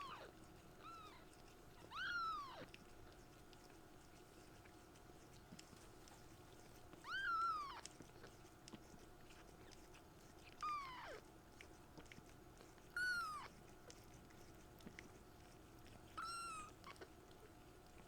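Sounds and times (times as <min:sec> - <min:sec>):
kitten mewing: 0:10.6 - 0:11.2, 0:13.0 - 0:13.5, 0:16.2 - 0:17.0.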